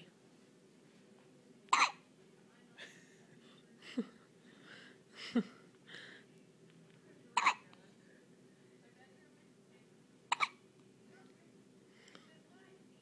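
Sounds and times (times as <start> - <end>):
person hiccuping: 1.8 - 2.0, 7.4 - 7.6, 10.3 - 10.6
soft breaths: 2.6 - 9.2, 11.1 - 12.9.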